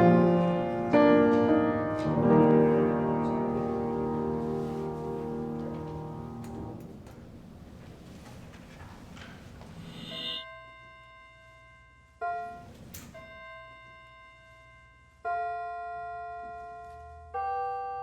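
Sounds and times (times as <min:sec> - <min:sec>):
slow soft piano: 0:00.0 - 0:07.4.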